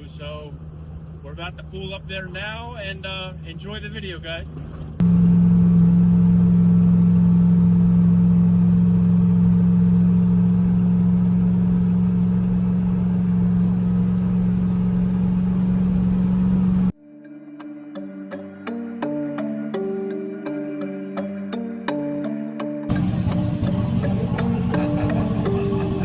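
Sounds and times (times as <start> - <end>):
car engine droning: 0.0 - 17.0, 22.9 - 26.0.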